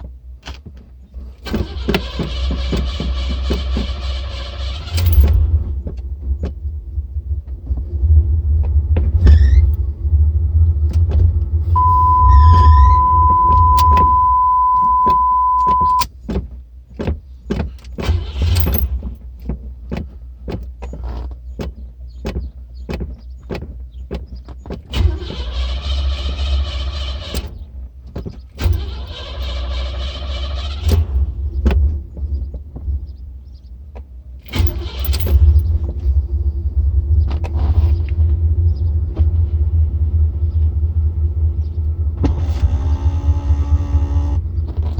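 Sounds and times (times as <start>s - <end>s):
car engine sputtering: 11.8s - 16.0s
steady high tone: 11.8s - 16.0s.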